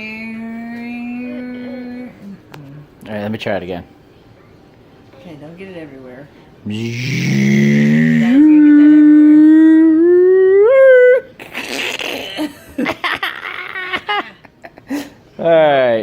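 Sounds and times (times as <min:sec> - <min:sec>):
person humming airplane drone: 0:00.0 - 0:02.8, 0:06.6 - 0:11.3.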